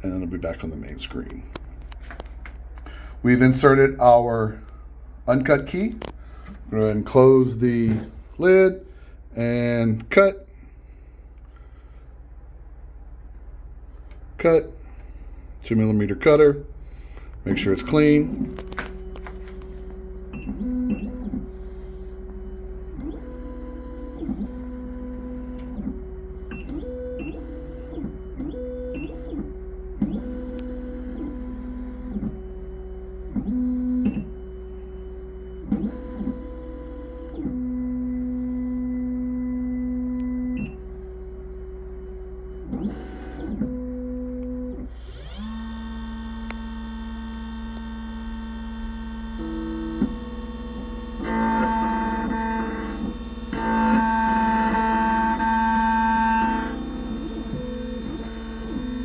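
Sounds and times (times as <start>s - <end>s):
stepper motors whining: 44.8s - 59.0s.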